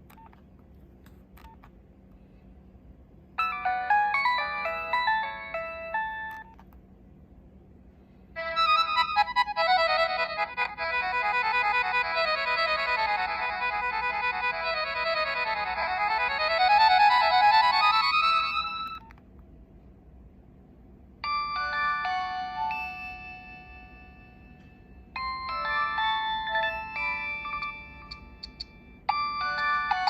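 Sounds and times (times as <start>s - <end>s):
polyphonic ringtone melody: 3.4s - 6.4s, 8.4s - 19.0s, 21.2s - 30.0s.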